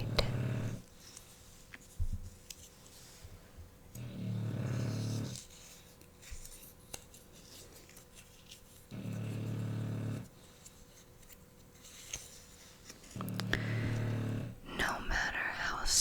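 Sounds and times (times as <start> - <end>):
puppy snoring: 0.0 - 0.8, 4.0 - 5.4, 8.9 - 10.3, 13.2 - 15.0
soft rustles: 0.0 - 3.7, 10.4 - 13.5.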